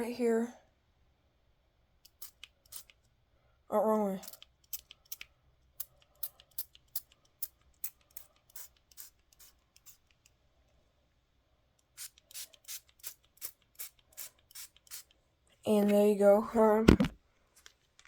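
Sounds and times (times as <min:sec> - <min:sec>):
spray bottle spritzes: 0:11.9 - 0:15.1.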